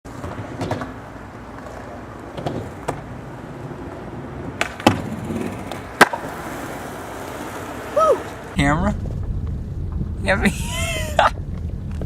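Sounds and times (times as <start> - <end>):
skateboard clacks and knocks: 0.1 - 8.6
skateboard rolling rumble: 0.1 - 12.0.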